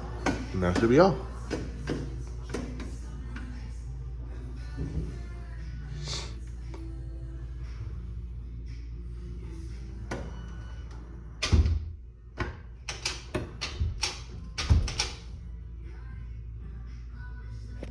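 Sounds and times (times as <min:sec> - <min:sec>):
background music: 0:00.0 - 0:17.9.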